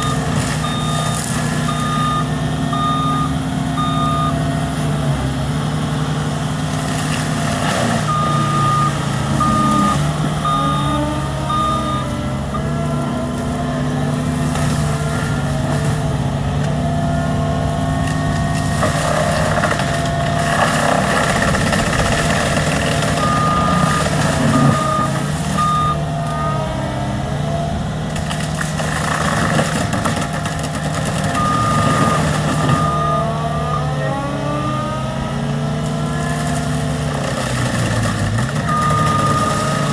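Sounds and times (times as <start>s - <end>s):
reverse alarm beeps: 0.0s - 4.5s, 8.0s - 12.8s, 23.2s - 26.7s, 31.3s - 33.9s, 38.6s - 39.9s
diesel engine running with whine: 0.0s - 39.9s.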